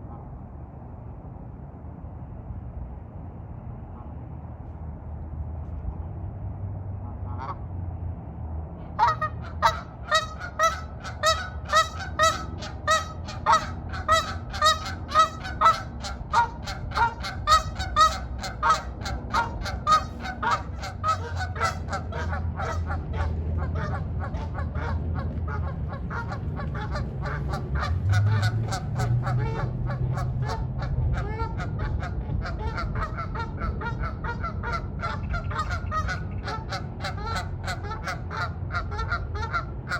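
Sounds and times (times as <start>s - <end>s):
geese honking: 9.0s - 39.9s.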